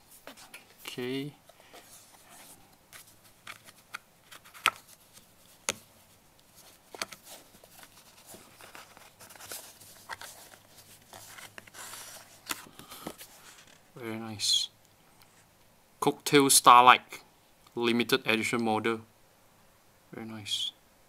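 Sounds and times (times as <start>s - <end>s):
packaging rustling: 1.5s - 13.8s
cardboard and plastic clicking: 3.0s - 5.0s.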